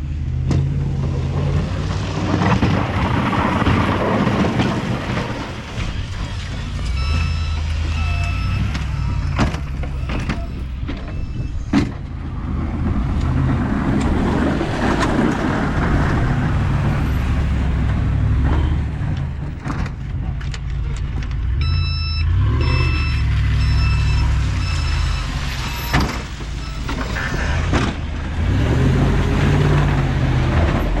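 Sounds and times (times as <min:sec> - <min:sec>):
truck engine rumbling: 0:00.0 - 0:31.0
reversing beeper beeps: 0:05.9 - 0:11.7, 0:21.6 - 0:27.5.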